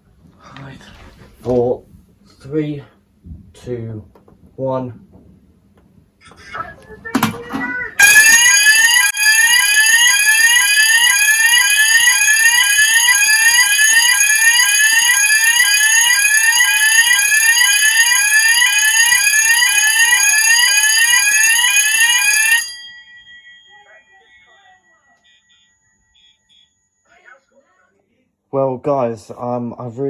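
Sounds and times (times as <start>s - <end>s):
fire alarm sounders: 8.0s - 23.5s.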